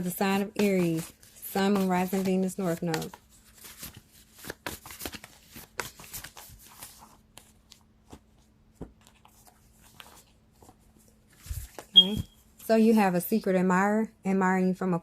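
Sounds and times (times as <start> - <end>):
cards being shuffled: 0.0 - 12.2.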